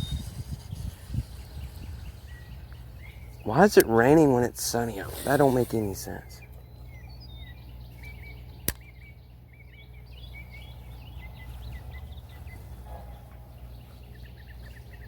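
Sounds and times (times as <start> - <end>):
birds chirping: 0.0 - 15.0
sharp click: 8.6 - 8.9.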